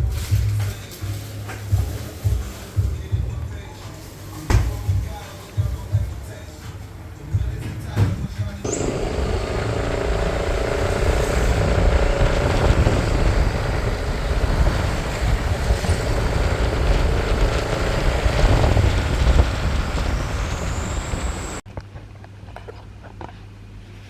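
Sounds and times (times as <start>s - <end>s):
vehicle road and engine noise: 8.6s - 21.6s.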